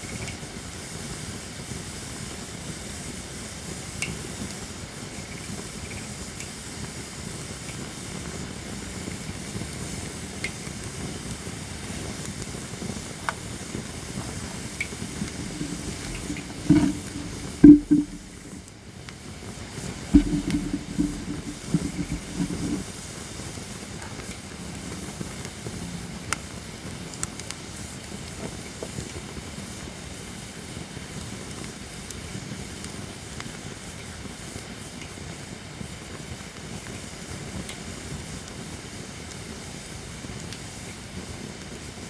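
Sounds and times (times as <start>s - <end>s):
campfire hissing: 14.2s - 18.6s
fire crackles and pops: 14.8s - 18.6s.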